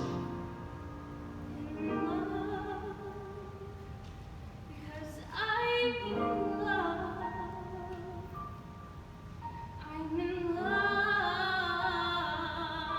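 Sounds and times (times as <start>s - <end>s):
woman singing: 1.4s - 4.0s, 4.7s - 8.6s, 9.7s - 12.9s.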